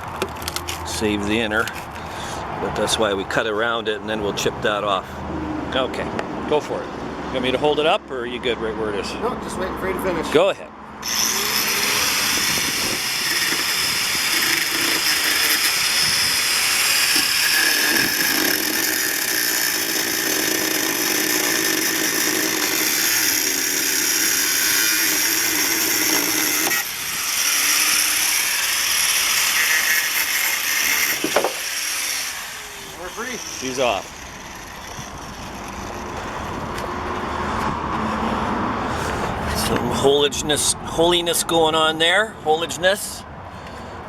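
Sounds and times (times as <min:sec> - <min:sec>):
power tool cutting sheet metal: 0:11.0 - 0:37.0.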